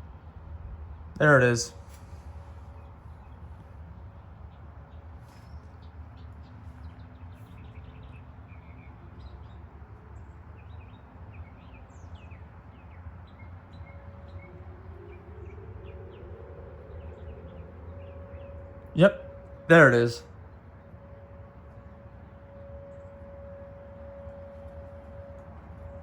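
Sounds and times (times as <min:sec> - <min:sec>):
distant warning siren: 0:00.0 - 0:26.0
birds chirping: 0:00.9 - 0:26.0
low background rumble: 0:13.2 - 0:26.0.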